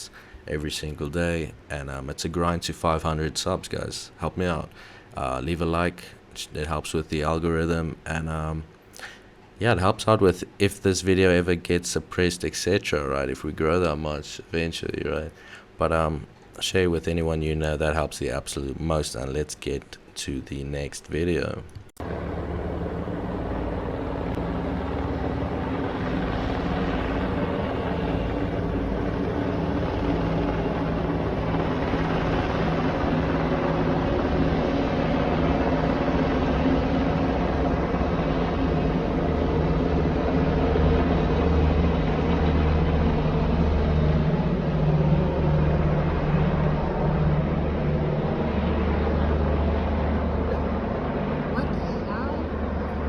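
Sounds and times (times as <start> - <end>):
droning engine hum: 22.0 - 53.0.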